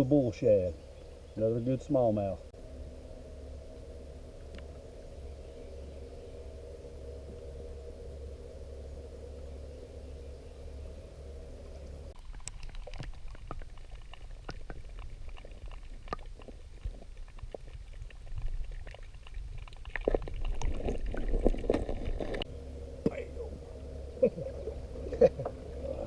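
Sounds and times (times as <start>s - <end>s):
steady low hum: 0.0s - 26.0s
water splashing and gurgling: 12.1s - 22.5s.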